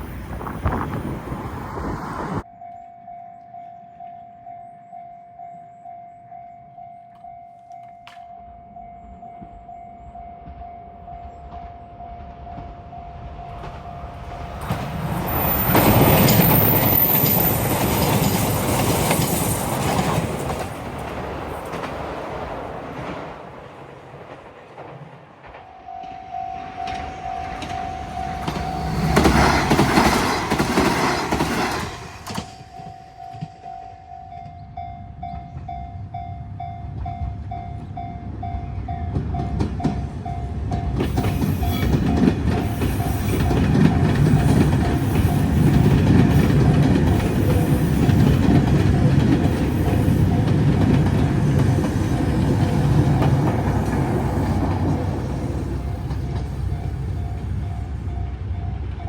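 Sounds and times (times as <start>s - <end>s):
train rumble and wheel clatter: 0.0s - 2.5s, 6.8s - 59.0s
level crossing bell ringing: 25.7s - 29.1s.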